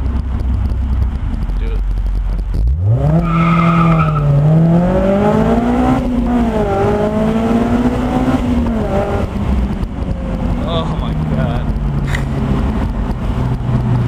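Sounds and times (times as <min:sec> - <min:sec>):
car engine revving: 0:00.0 - 0:14.0
tyre squeal: 0:03.0 - 0:04.4.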